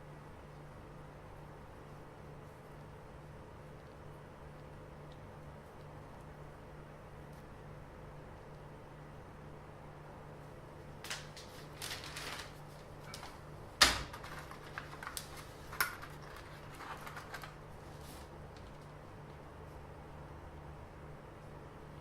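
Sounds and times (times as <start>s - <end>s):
faint steady hum: 0.0s - 22.0s
small objects clicking and rustling: 14.1s - 17.6s.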